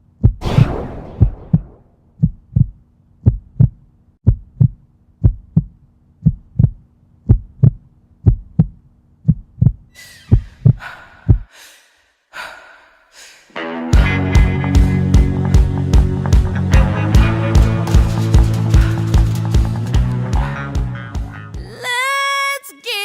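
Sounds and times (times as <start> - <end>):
heartbeat thumps: 1.2 - 11.5.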